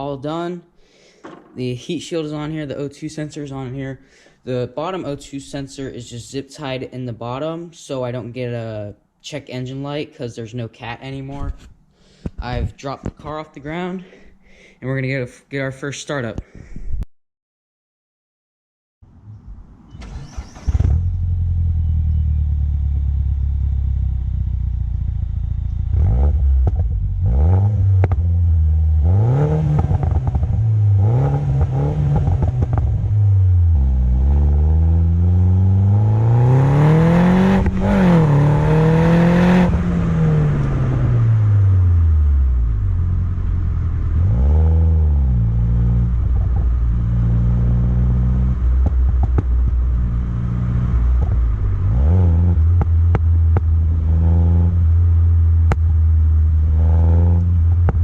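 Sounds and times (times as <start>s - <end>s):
car engine starting and revving: 19.2s - 58.0s.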